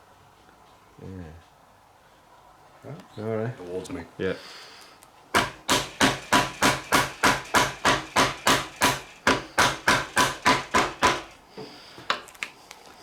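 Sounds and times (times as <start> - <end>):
hammer blows on metal: 5.4 - 11.7.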